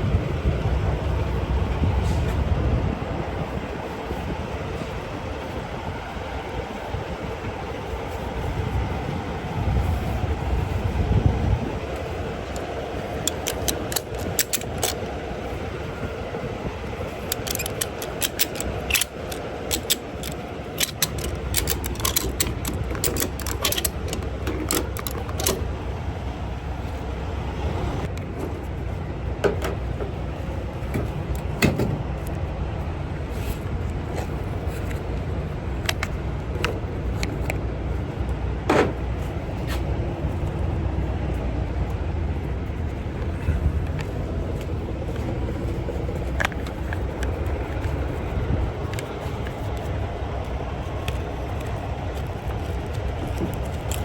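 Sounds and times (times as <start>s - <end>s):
vehicle engine rumble: 0.0s - 54.0s
metallic clinks and clanks: 12.5s - 15.1s, 17.2s - 25.7s.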